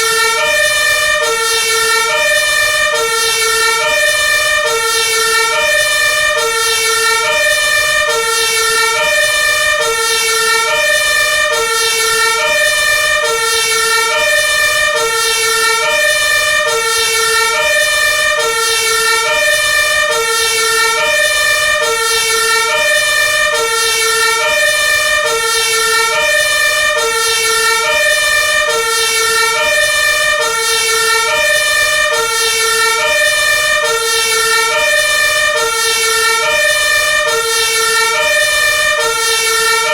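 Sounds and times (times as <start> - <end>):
two-tone fire truck siren: 0.0 - 39.9.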